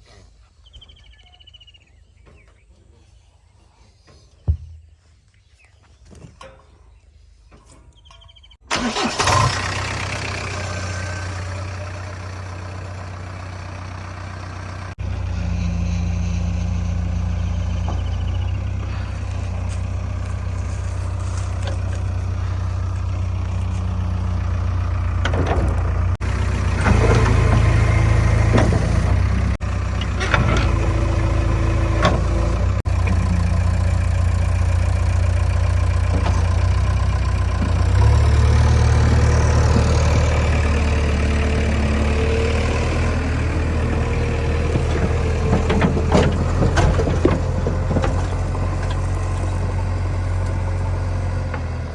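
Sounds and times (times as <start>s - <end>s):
heavy diesel engine running: 8.7s - 51.9s.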